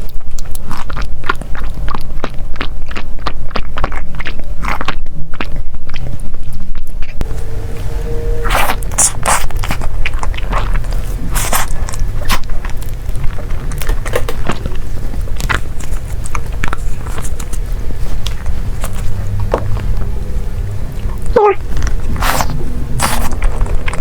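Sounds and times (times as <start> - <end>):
crunchy bites and chewing: 0.0 - 7.2, 8.4 - 20.2, 21.0 - 24.0
steady low hum: 0.0 - 24.0
sticky mouth clicks: 21.0 - 24.0.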